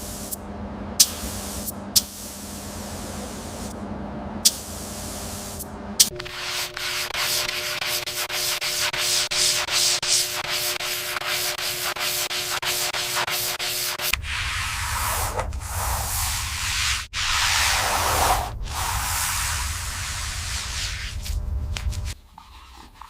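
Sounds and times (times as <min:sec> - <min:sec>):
steady hiss: 0:00.0 - 0:00.4, 0:11.8 - 0:22.2
sandpaper rubbing by hand: 0:06.2 - 0:23.0.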